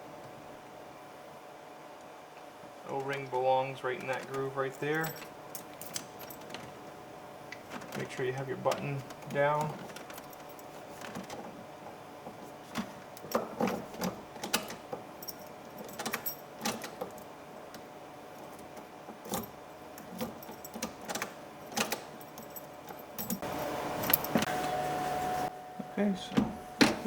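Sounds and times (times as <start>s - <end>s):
steady hum: 0.0s - 27.0s
keys jangling: 4.8s - 6.7s, 9.8s - 11.4s, 13.2s - 17.4s, 18.3s - 24.4s.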